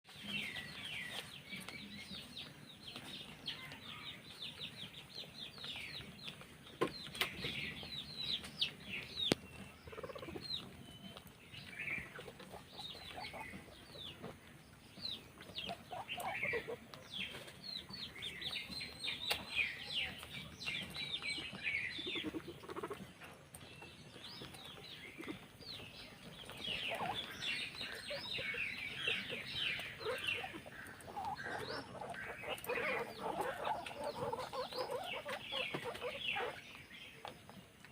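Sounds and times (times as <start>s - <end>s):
guinea pigs squeaking: 6.8s - 14.4s, 15.1s - 37.4s.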